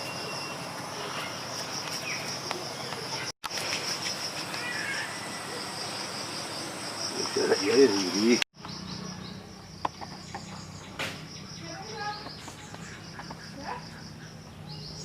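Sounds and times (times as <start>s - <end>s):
high-pitched insect chorus: 0.0s - 15.0s.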